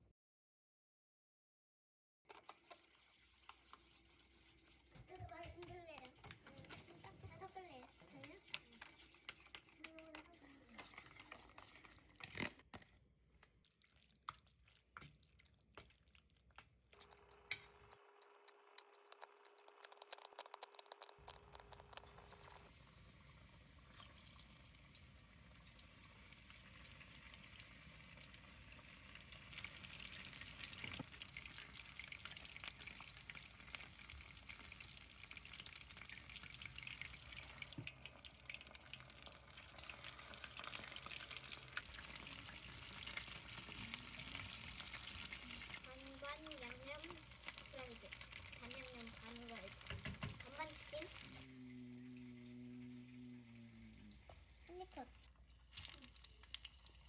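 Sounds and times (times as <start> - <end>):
food sizzling in oil: 2.4 - 12.5, 17.0 - 51.5.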